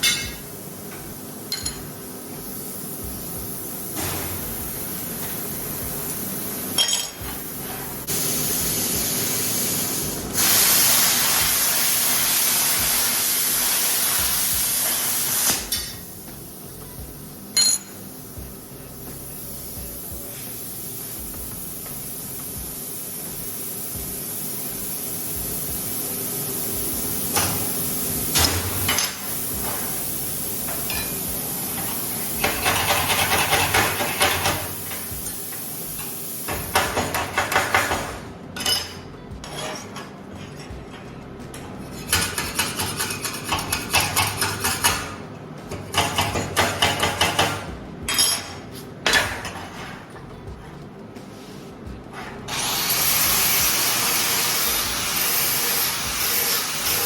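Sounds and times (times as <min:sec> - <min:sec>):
welding arc crackling: 0:00.0 - 0:17.4, 0:18.3 - 0:37.9, 0:52.5 - 0:57.0.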